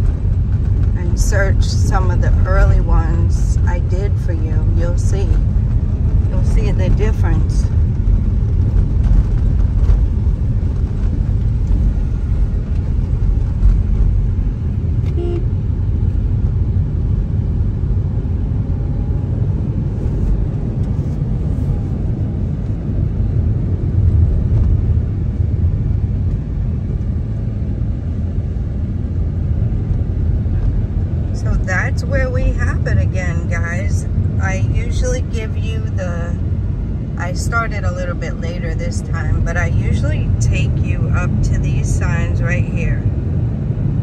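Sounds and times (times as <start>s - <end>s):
car engine and road rumble: 0.0s - 44.0s
brief higher tone: 15.1s - 15.5s.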